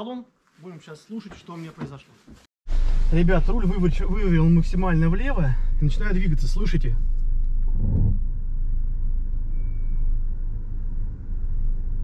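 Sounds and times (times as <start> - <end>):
car engine running at low revs: 2.7 - 12.0
low thump: 7.4 - 8.7
faint high squeak: 9.5 - 10.2.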